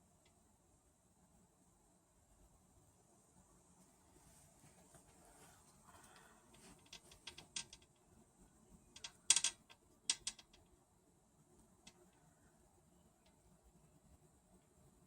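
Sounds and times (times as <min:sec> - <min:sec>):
toy string clicks and creaks: 0:06.5 - 0:08.0, 0:09.0 - 0:10.7.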